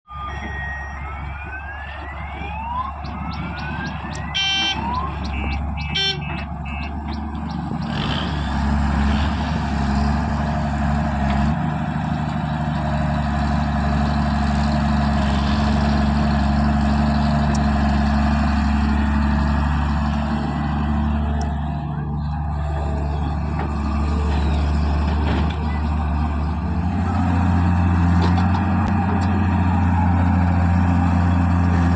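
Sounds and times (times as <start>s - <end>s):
vehicle engine droning: 0.1s - 31.9s
short pitched tone clusters: 3.2s - 7.0s.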